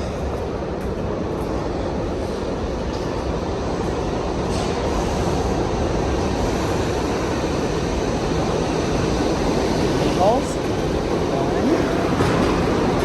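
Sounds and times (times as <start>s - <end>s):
subway train rumbling: 0.0s - 13.0s.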